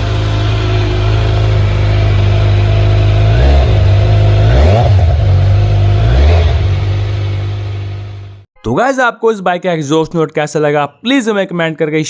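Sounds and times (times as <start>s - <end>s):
motorcycle engine idling and revving: 0.0s - 8.5s.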